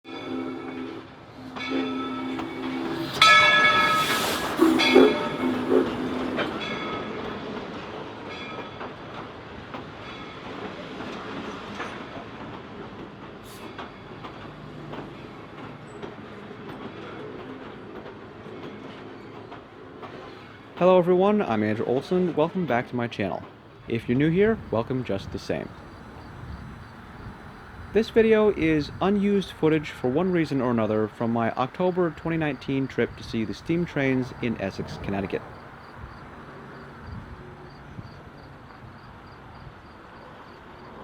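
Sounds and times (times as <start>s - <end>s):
steam locomotive whistle blasts: 0.1s - 6.6s
train rolling on rails: 0.1s - 41.0s.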